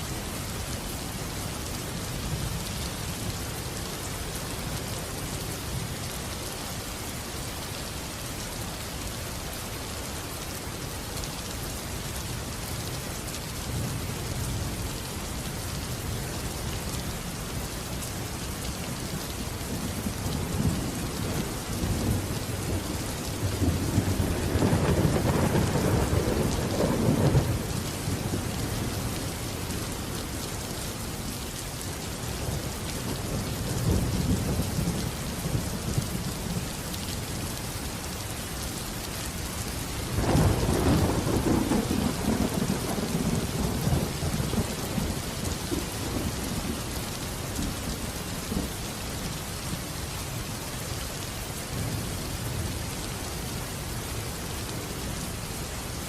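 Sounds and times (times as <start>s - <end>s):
steady rain: 0.0s - 56.0s
rolling thunder: 20.5s - 28.8s.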